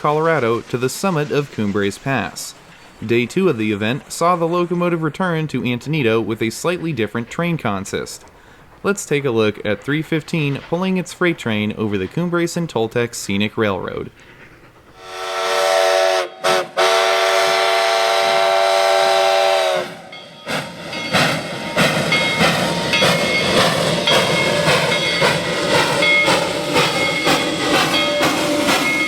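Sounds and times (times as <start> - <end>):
steam locomotive exhaust chuffing: 0.0 - 11.3, 13.5 - 29.0
steam whistle blast: 15.0 - 20.2.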